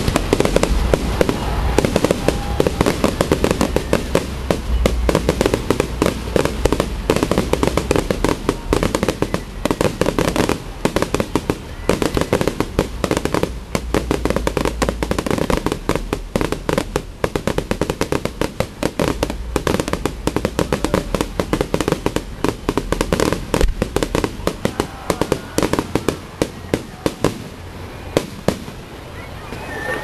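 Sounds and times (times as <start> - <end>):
fireworks bangs: 0.0 - 30.0.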